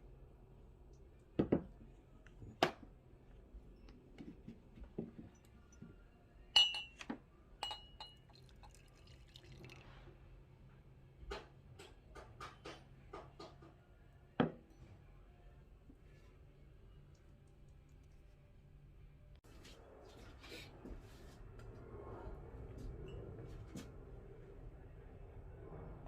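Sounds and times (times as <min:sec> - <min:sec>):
cups clinking: 0:06.6 - 0:09.8.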